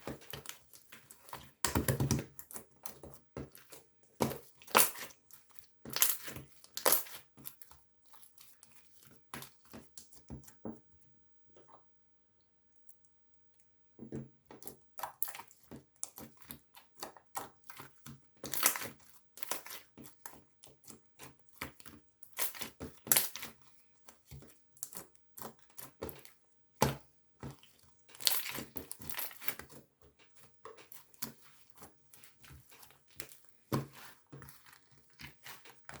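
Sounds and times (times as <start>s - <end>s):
rustling and crinkling handling noise: 27.4s - 36.0s.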